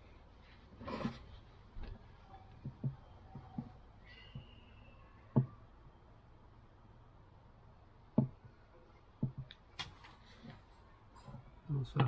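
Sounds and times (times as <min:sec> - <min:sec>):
hard plastic and tools knocking: 0:02.6 - 0:03.8, 0:08.2 - 0:08.6, 0:09.2 - 0:09.5.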